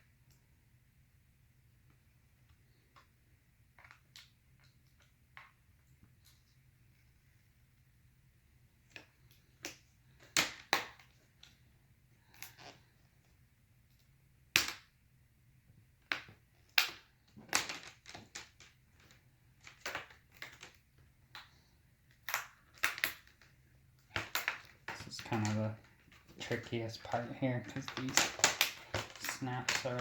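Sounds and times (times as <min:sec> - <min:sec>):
plastic clips clicking and cracking: 0:22.1 - 0:23.4, 0:24.1 - 0:30.0.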